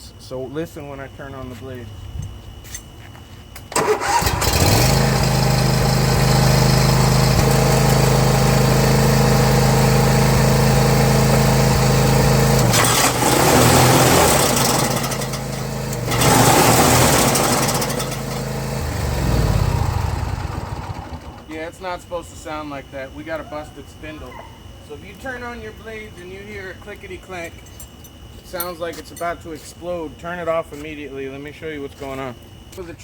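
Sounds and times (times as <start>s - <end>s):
mower engine running: 3.7s - 21.5s
clanking from mower deck: 11.1s - 11.8s, 12.4s - 19.1s.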